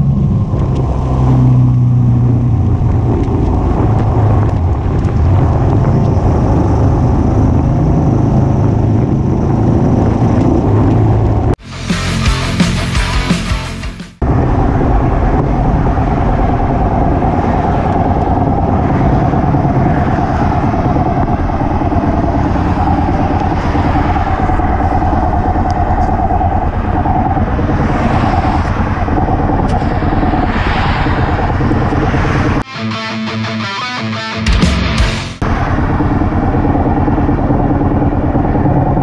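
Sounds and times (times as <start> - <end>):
wind rush on microphone: 0.0 - 11.6, 14.2 - 32.7, 35.4 - 39.0
music: 11.6 - 14.2, 32.7 - 35.4
motorcycle engine running: 34.6 - 39.0.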